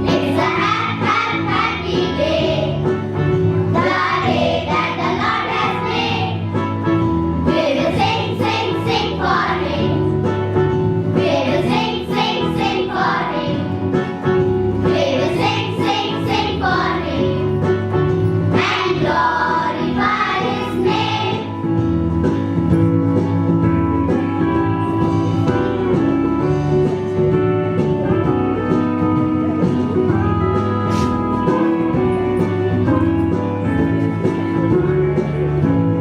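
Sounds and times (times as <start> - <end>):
instrumental backing music: 0.0 - 36.0.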